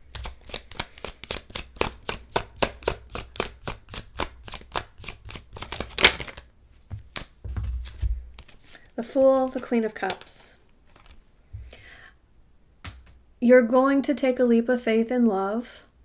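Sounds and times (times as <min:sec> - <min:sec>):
cards being shuffled: 0:00.0 - 0:11.2.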